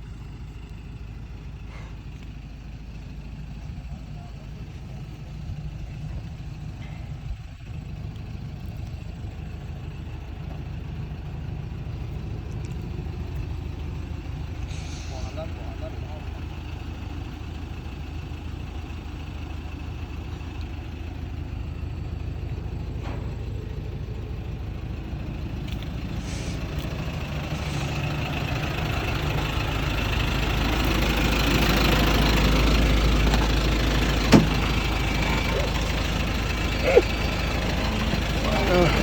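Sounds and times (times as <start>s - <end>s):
truck engine running: 0.0s - 39.0s.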